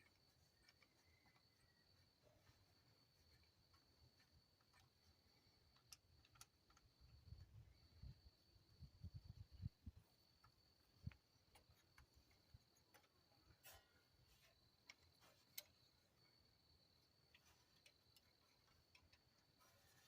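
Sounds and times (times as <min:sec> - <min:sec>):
light metal clicks and ticks: 0:03.2 - 0:07.4, 0:10.2 - 0:20.0.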